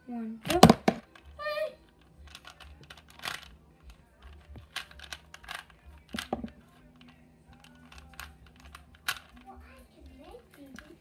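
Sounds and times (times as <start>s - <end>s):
puzzle cube plastic clicks: 1.9s - 9.5s.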